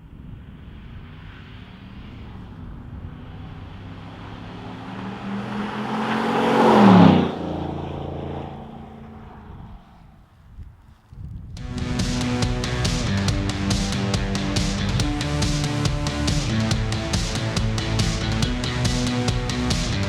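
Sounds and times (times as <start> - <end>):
truck exhaust driving past: 0.3 - 10.3.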